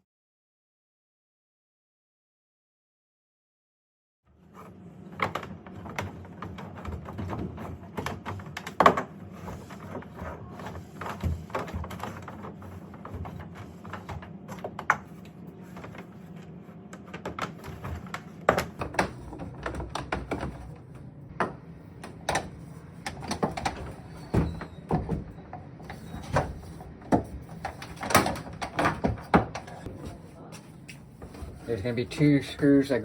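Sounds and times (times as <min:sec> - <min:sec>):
knocks and clatter of wooden parts: 0:04.5 - 0:30.2.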